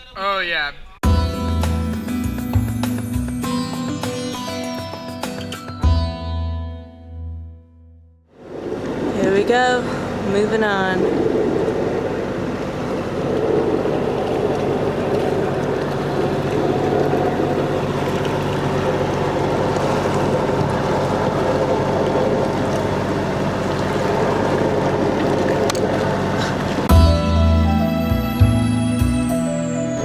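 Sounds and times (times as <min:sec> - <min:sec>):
low engine drone: 0:08.4 - 0:30.0
water rushing: 0:08.4 - 0:30.0.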